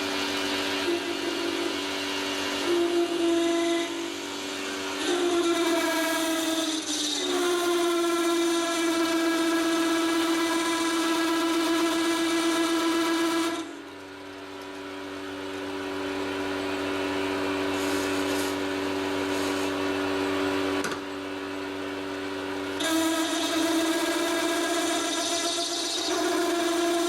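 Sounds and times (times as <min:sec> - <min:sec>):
metal lathe whining: 0:00.0 - 0:13.9, 0:22.8 - 0:27.0.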